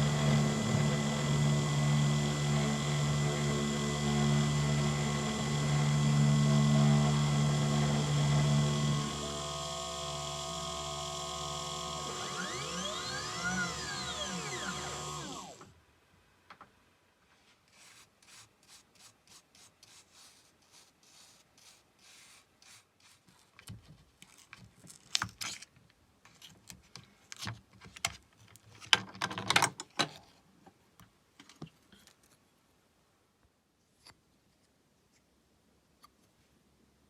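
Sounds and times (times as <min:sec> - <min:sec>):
scraping and rubbing strokes: 0:17.3 - 0:25.1.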